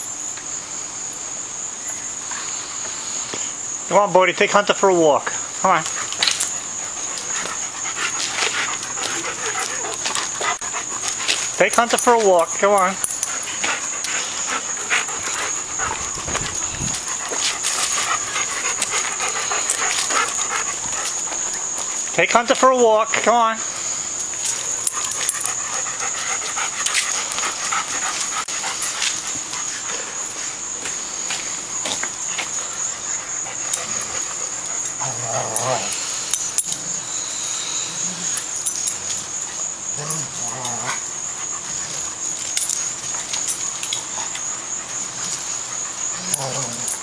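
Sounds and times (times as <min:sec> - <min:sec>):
thin steady high tone: 0:01.8 - 0:47.0
dog panting: 0:05.9 - 0:22.1, 0:23.8 - 0:35.0
dog vocalizing: 0:13.3 - 0:21.0.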